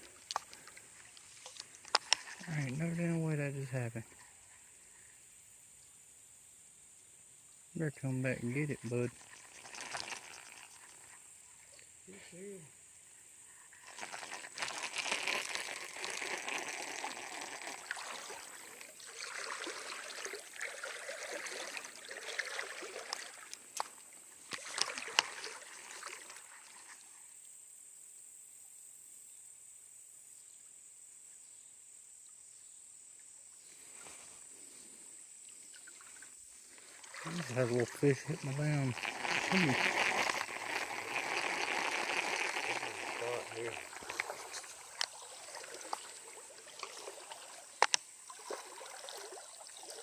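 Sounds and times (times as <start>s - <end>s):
water trickling: 0.0s - 5.1s, 7.5s - 12.1s, 12.9s - 27.2s, 35.4s - 50.0s
water splashing around wading person: 8.4s - 11.8s, 13.8s - 27.1s, 35.6s - 50.0s.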